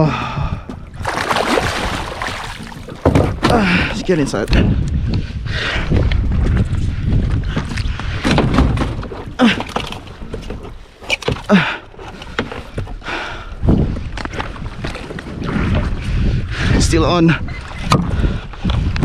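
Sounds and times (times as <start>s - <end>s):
wind buffeting microphone: 0.0s - 10.8s, 12.2s - 19.0s
gear knocking against kayak: 0.6s - 4.7s.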